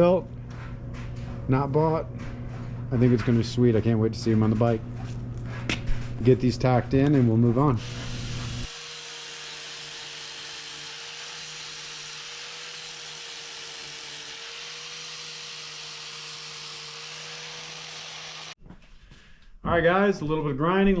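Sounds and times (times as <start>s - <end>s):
angle grinder on steel pipe: 7.8s - 18.6s.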